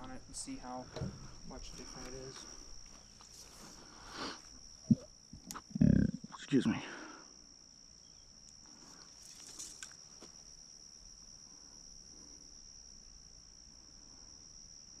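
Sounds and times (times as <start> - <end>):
crickets chirring: 0.0 - 15.0
faint clicks and rustles: 8.5 - 10.1.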